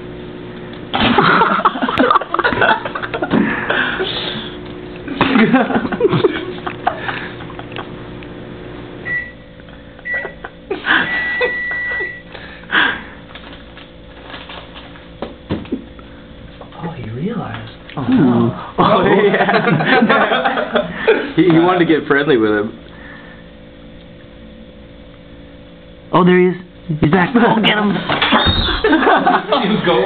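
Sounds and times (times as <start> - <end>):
microwave oven hum: 0.0 - 30.0
microwave beeps: 9.0 - 12.4.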